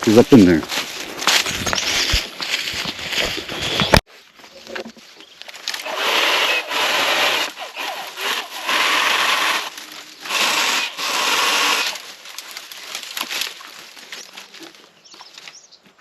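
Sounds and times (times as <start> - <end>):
hand saw cutting branch: 5.7 - 13.6.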